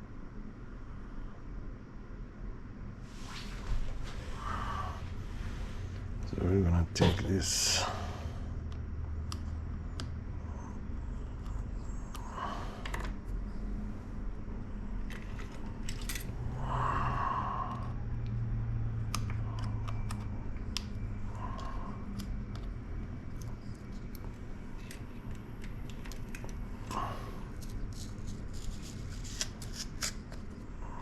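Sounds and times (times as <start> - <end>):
steady low hum: 0.0 - 31.0
soft rustles: 3.1 - 6.2.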